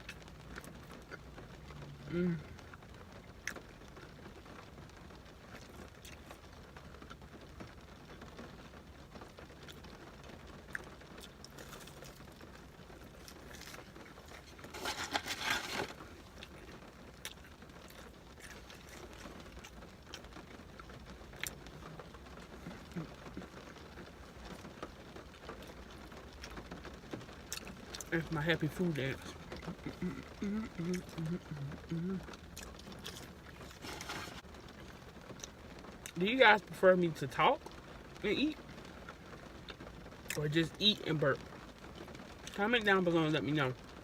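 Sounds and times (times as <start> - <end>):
chewing and lip-smacking: 10.7 - 23.8, 27.4 - 28.1, 29.5 - 36.2
paper rustling: 14.4 - 16.1, 33.7 - 34.4.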